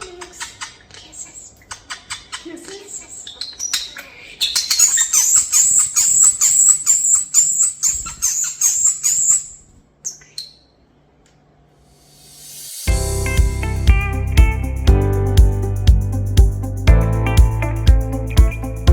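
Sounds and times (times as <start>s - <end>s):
starling calling: 0.0s - 10.8s
rising hiss: 11.9s - 15.8s
music: 12.9s - 18.9s.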